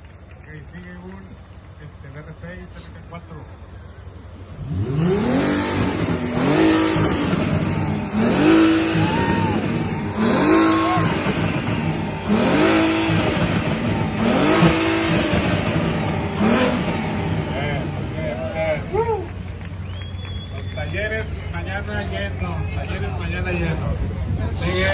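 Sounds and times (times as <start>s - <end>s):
car engine revving: 4.2s - 20.7s.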